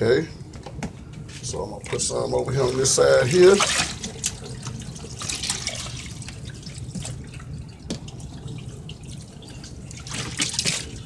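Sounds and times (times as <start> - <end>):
water dripping and splashing: 3.3 - 11.0.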